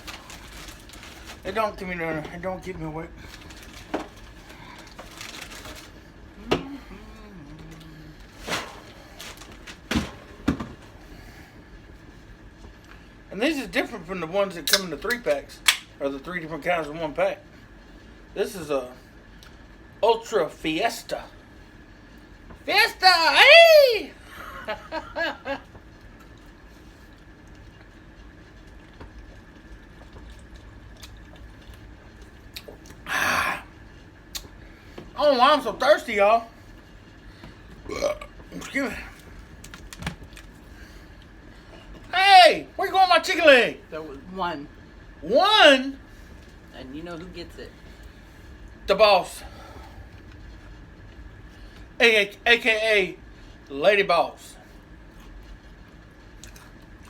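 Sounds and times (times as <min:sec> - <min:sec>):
person humming: 0:06.4 - 0:08.2
person swallowing drink: 0:37.8 - 0:38.5
breathy exhale: 0:49.4 - 0:50.1.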